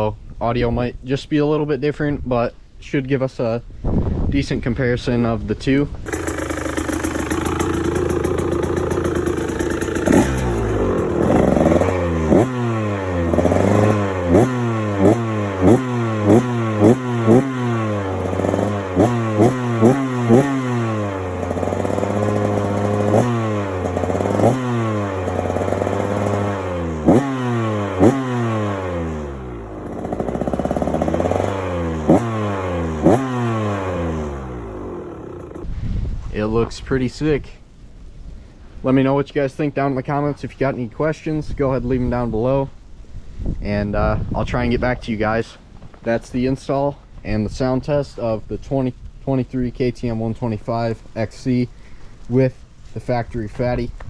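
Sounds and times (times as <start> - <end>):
two-stroke engine revving: 6.1 - 35.7.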